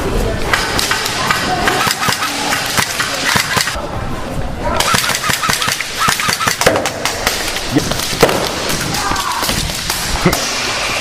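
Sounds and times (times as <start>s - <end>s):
voices: 0.0s - 6.7s
airsoft guns firing: 0.5s - 3.8s, 4.8s - 10.1s.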